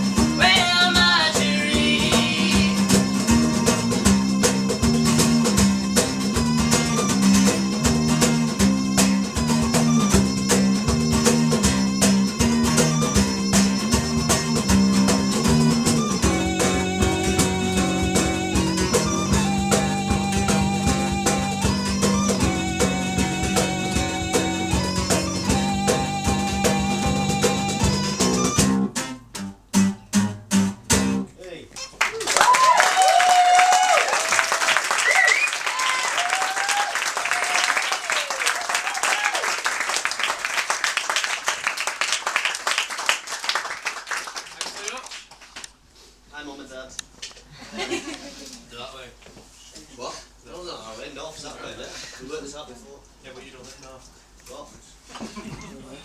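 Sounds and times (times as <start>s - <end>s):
acoustic band playing: 0.0s - 32.0s
guitar: 0.0s - 32.0s
higher wavering melody line: 0.1s - 28.7s.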